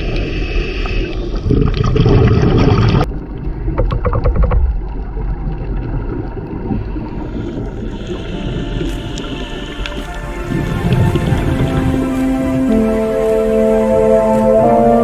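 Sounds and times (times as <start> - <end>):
wind and water noise: 0.0 - 15.0
boat engine rumble: 6.5 - 15.0.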